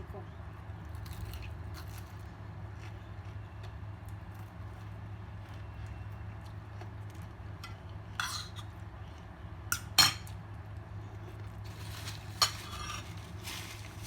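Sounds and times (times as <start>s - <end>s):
plates and utensils clinking: 8.2s - 8.7s, 9.8s - 10.3s, 12.2s - 13.2s.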